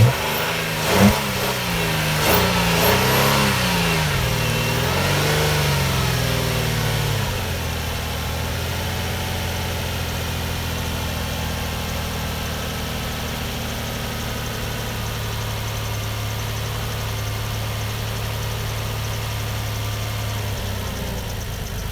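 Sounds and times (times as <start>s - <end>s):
car engine idling: 0.0s - 21.9s.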